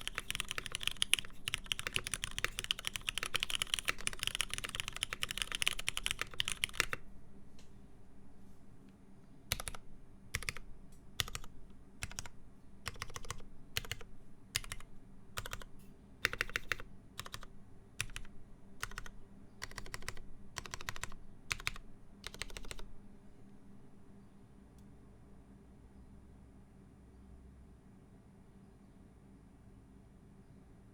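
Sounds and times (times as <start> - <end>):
mechanical keyboard typing: 0.0 - 7.0, 9.5 - 22.9.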